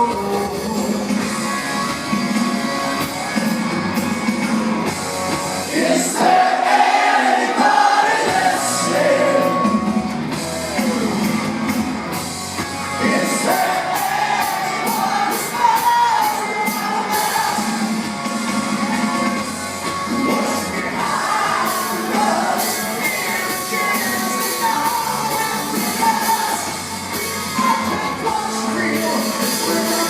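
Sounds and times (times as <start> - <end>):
man singing lead vocal: 0.0 - 1.6, 5.7 - 9.8, 12.9 - 17.9, 20.1 - 30.0
electric guitars: 0.0 - 30.0.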